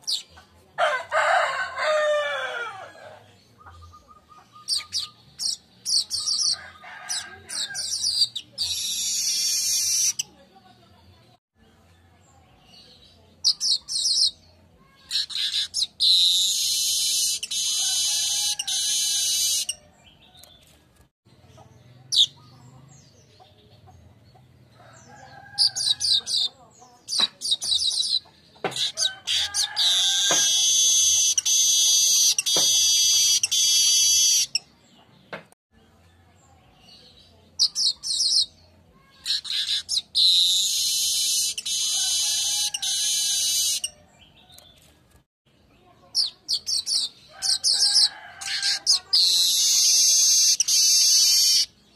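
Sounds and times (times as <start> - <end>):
bird chirping and buzzing: 3.4 - 10.6, 12.7 - 20.7, 24.7 - 35.4, 45.8 - 51.9.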